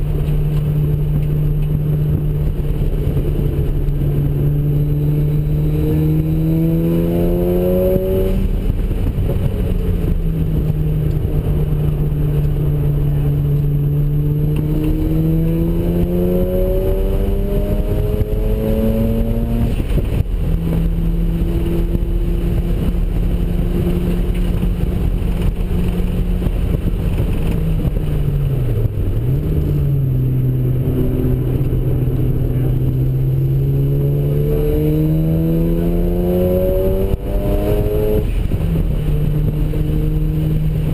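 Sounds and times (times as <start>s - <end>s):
rotary engine revving hard: 4.8s - 8.6s, 14.2s - 20.0s, 30.8s - 38.6s.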